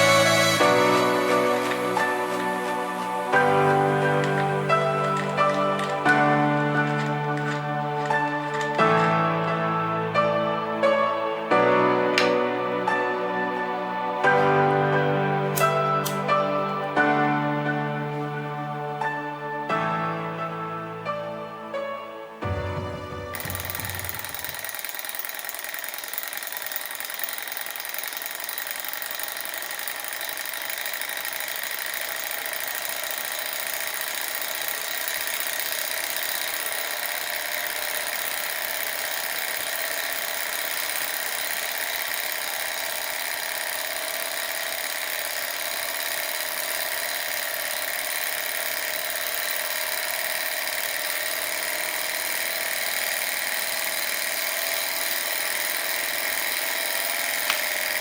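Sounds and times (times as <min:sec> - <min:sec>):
machine whirring hiss: 0:00.0 - 0:06.2.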